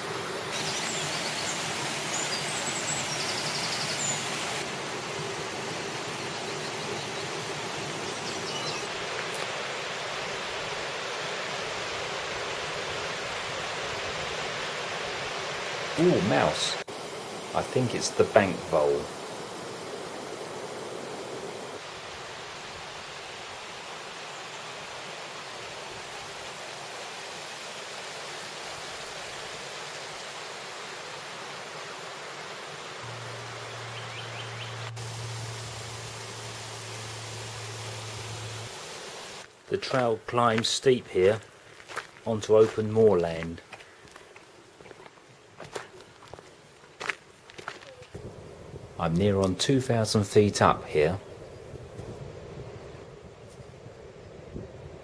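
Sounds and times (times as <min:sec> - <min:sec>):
waterfall rushing: 0:00.0 - 0:39.7.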